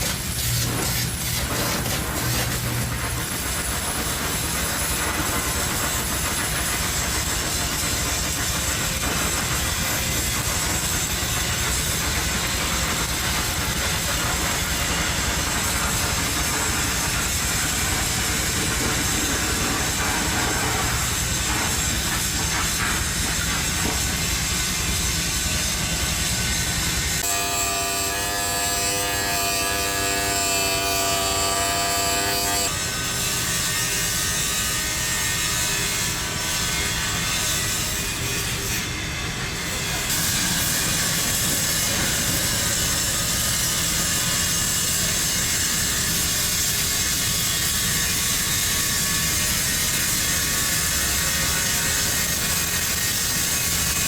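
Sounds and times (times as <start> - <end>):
power tool whine: 25.5 - 54.0
welding arc crackling: 34.4 - 51.3.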